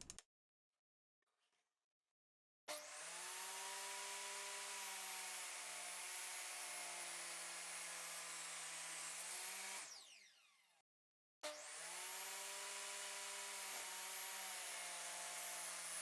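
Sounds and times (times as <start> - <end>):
table saw whining: 2.7 - 10.7, 11.5 - 16.0.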